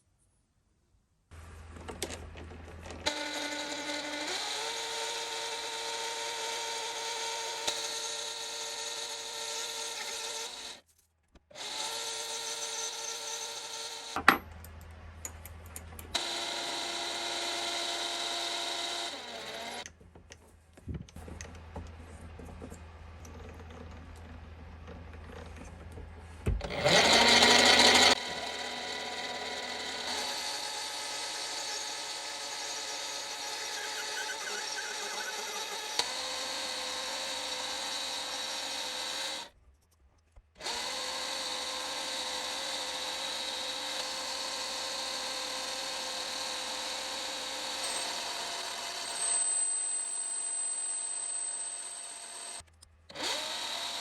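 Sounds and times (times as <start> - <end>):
power tool motor whining: 1.9 - 10.8, 11.6 - 14.3, 16.1 - 19.9, 26.5 - 39.5, 40.6 - 49.7, 51.7 - 54.0.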